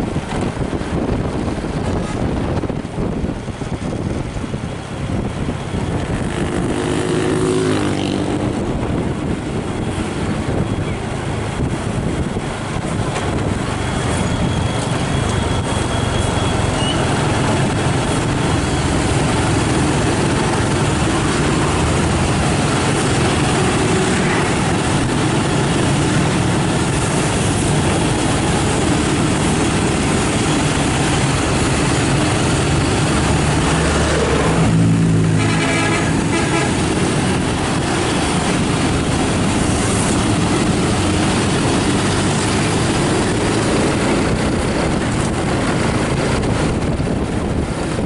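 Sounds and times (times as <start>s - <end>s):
bus engine and road noise: 0.0s - 48.0s
multi-tone horn: 35.2s - 37.0s.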